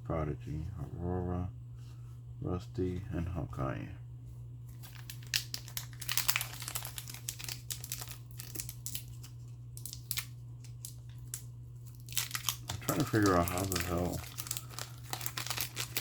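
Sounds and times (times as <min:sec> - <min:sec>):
steady low hum: 0:00.0 - 0:16.0
foil wrapper crinkling: 0:04.7 - 0:16.0.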